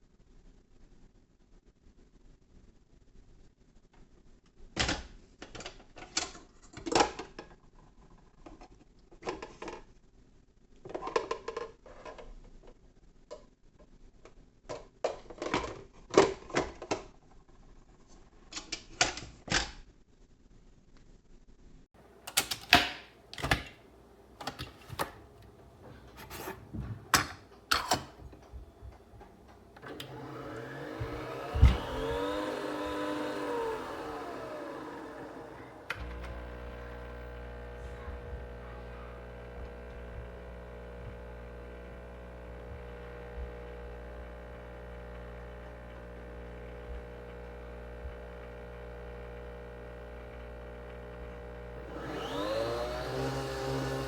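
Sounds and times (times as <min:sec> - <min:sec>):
coffee machine motor whine: 0:28.0 - 0:54.0.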